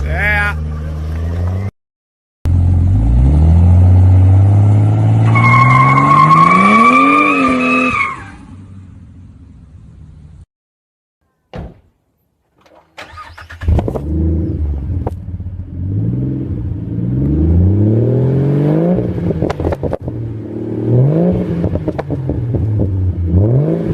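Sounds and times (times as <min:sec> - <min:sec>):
car engine revving: 0:00.5 - 0:01.7, 0:02.5 - 0:09.2, 0:13.0 - 0:23.9.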